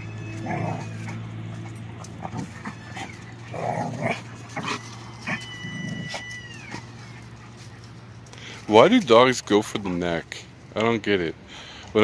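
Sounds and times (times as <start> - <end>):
puppies growling and yipping: 0.0 - 8.6.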